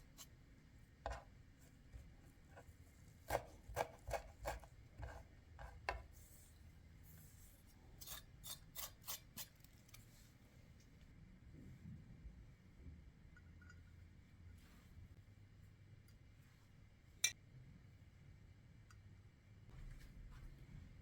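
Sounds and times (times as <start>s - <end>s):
kitchen utensil tapping and scraping: 1.0s - 1.3s.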